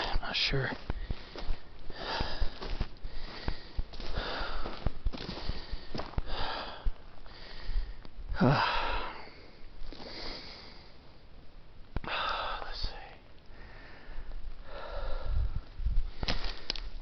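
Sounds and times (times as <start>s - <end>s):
heavy breathing: 0.8s - 11.0s, 12.1s - 16.9s
clicks and scuffs: 16.2s - 16.9s.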